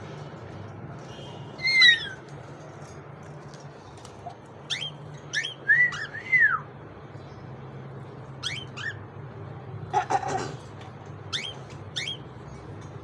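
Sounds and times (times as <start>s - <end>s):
cockatiels whistling: 1.6s - 2.2s, 4.7s - 6.6s, 8.4s - 9.0s, 11.3s - 12.2s.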